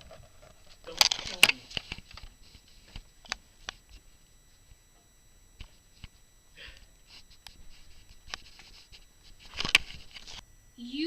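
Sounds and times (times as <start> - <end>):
soft rustle: 1.6 - 4.9, 7.0 - 11.0.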